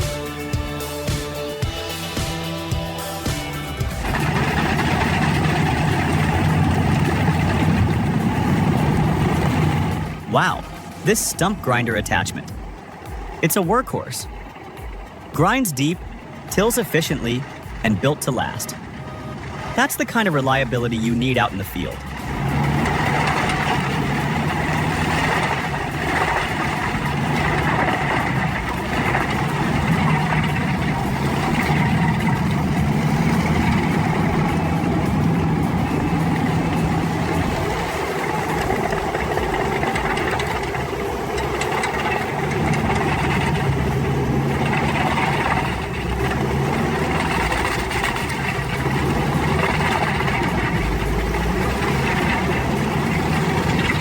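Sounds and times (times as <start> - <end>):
heavy machine engine droning: 0.0 - 54.0.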